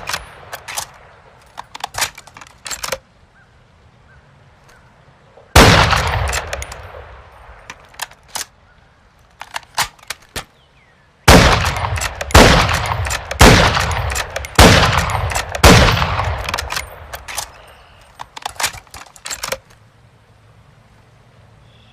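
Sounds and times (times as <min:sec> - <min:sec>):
rifle bolt clicks: 0:00.0 - 0:03.1, 0:07.6 - 0:08.6, 0:09.3 - 0:10.5, 0:11.6 - 0:19.8
rifle shots with echo: 0:05.5 - 0:07.7, 0:11.3 - 0:17.6.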